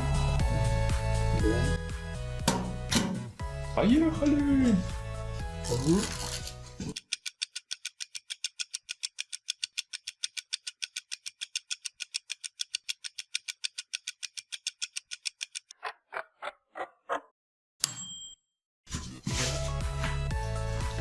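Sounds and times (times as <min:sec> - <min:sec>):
rapid mechanical ticking: 0:06.9 - 0:15.7.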